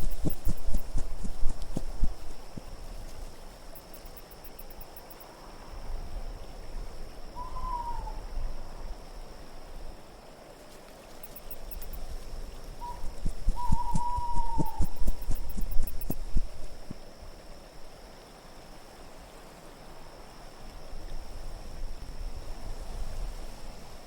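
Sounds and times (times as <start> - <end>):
wind gusts: 0.0 - 10.3, 11.1 - 18.2
owl hooting: 7.4 - 8.3, 12.8 - 16.9.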